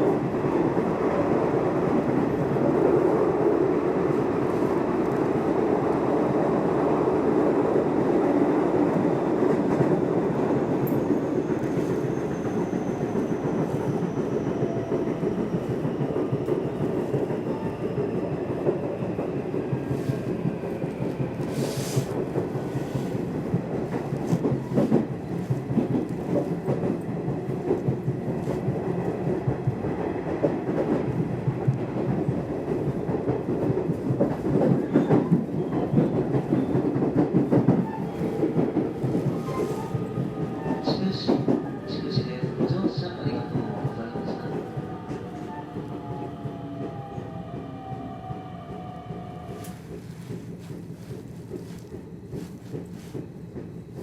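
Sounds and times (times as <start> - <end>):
train wheels rumbling on track: 0.0 - 54.0
rail-joint clicks: 10.8 - 17.4, 49.6 - 54.0.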